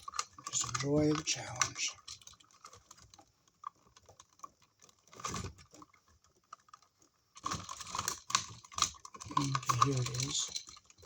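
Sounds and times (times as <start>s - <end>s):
electrical wires being handled: 7.4s - 11.0s.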